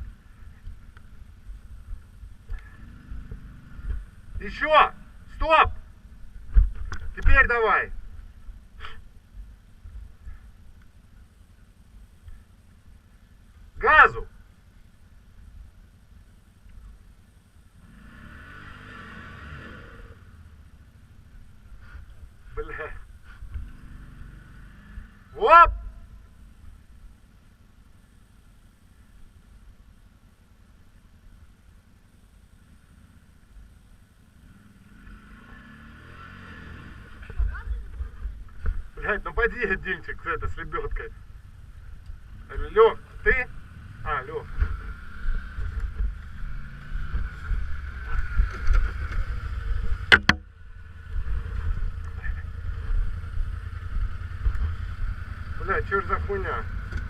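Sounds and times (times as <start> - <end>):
quad bike engine idling: 0.0 - 7.1, 7.7 - 18.0, 19.9 - 57.0
low rumble on microphone: 44.5 - 57.0.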